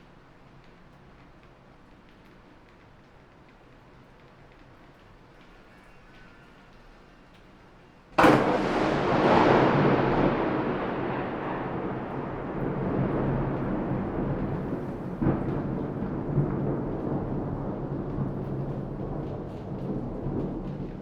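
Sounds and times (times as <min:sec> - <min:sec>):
thunder crack and rumble: 0:08.2 - 0:21.0.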